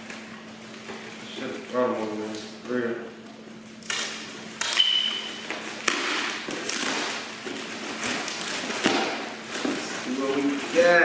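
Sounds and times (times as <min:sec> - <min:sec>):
package scraping and rustling: 0:05.2 - 0:11.0.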